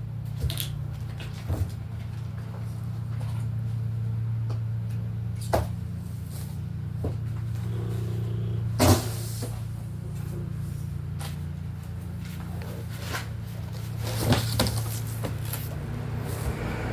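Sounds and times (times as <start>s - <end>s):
low hum: 6.6s - 14.0s.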